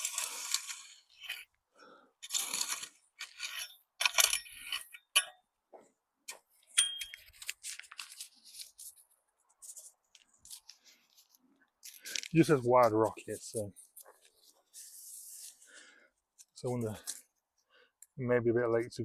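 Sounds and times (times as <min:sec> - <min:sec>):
paper packet rustling and tearing: 0:00.0 - 0:01.5, 0:02.2 - 0:03.6, 0:07.2 - 0:15.8.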